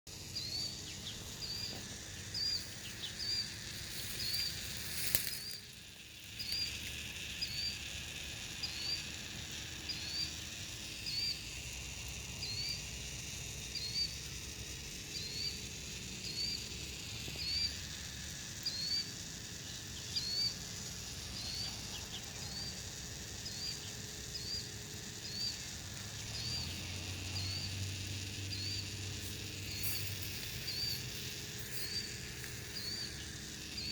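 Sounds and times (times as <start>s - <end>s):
high rising chirp: 0.1s - 7.9s, 15.1s - 33.9s
steady hiss: 0.1s - 33.9s.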